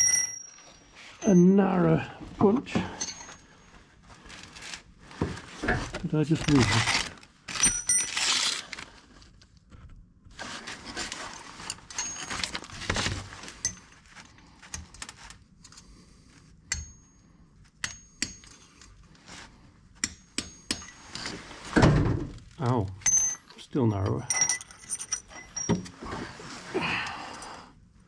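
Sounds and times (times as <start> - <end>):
metal hand tools clinking: 0.0 - 1.5, 23.0 - 25.9.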